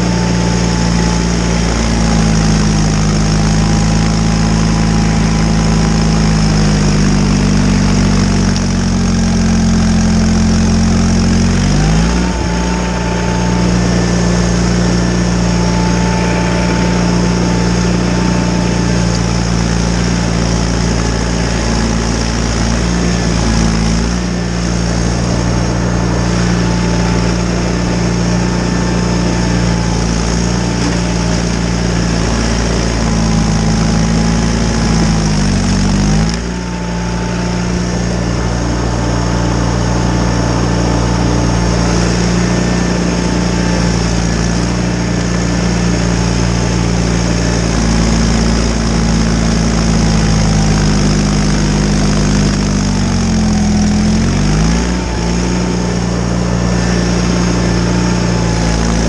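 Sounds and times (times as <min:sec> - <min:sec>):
garden tractor engine running: 0:00.0 - 0:59.0.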